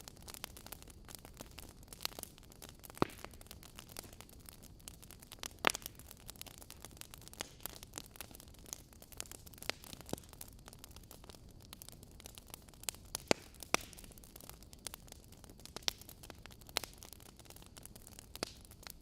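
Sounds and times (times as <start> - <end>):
fire hissing: 0.0 - 19.0
wood fire crackling: 0.0 - 19.0
logs popping: 2.0 - 6.7.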